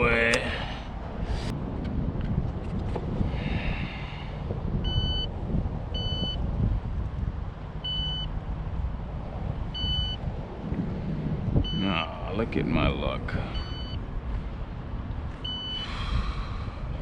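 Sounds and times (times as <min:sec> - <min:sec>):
wind buffeting microphone: 0:00.0 - 0:17.0
short electronic beeps: 0:04.9 - 0:05.3, 0:06.0 - 0:06.4, 0:07.8 - 0:08.3, 0:09.8 - 0:10.2, 0:11.6 - 0:11.9, 0:13.6 - 0:14.0, 0:15.4 - 0:15.9.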